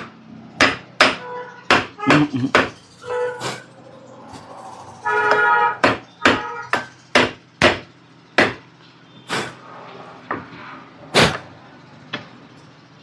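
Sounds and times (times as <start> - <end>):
hammer knocking on wooden block: 0.6 - 2.8, 5.8 - 8.7.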